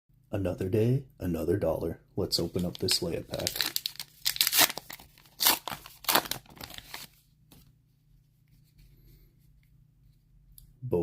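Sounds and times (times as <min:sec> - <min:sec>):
foil wrapper tearing and crinkling: 0:02.6 - 0:07.1.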